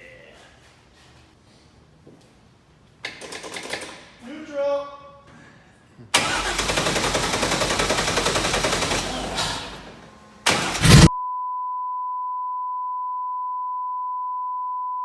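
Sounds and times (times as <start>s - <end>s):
engine firing up: 6.2s - 11.1s
short loud burst: 10.5s - 11.1s.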